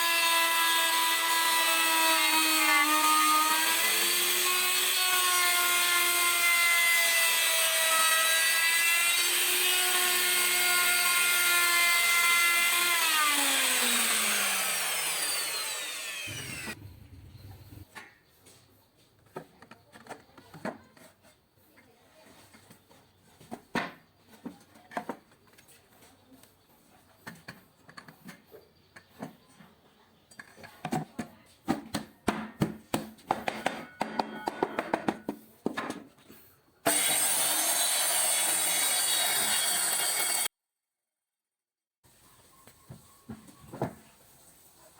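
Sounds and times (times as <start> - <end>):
circular saw motor whining: 13.0 - 17.8, 36.9 - 40.5.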